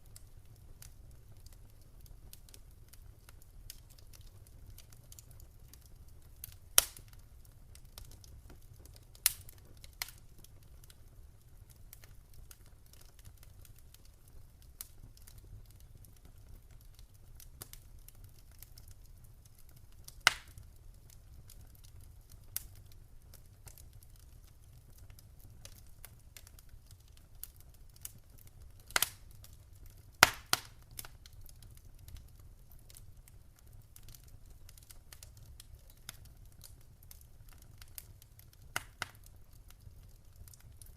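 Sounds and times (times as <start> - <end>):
wood fire crackling: 0.0 - 40.9.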